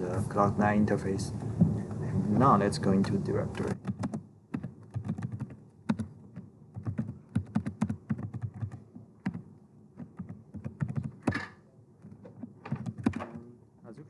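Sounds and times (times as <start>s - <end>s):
keyboard typing: 3.6s - 13.4s.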